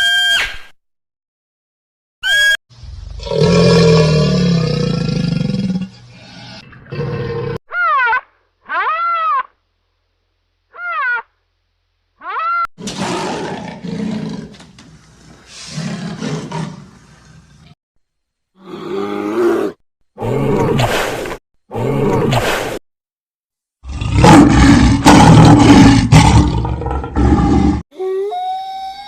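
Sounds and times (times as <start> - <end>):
animal roars: 2.8 - 7.6, 12.8 - 14.7, 15.5 - 17.8, 18.6 - 20.8, 23.8 - 27.8.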